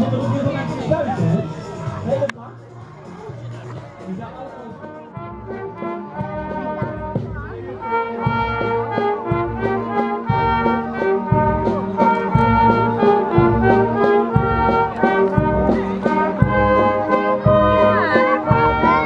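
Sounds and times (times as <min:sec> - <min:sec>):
bass drum beat: 0:00.0 - 0:19.0
trumpets and trombones melody: 0:04.6 - 0:19.0.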